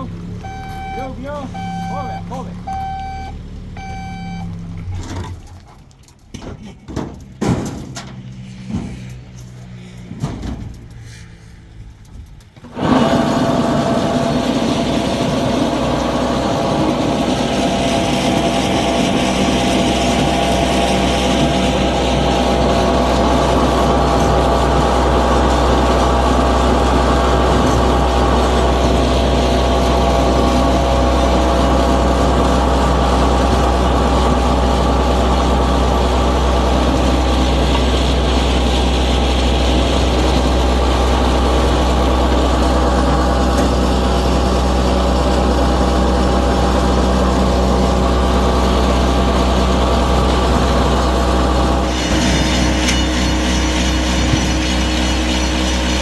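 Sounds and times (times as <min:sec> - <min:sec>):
motor running with low hum: 0:12.7 - 0:56.0.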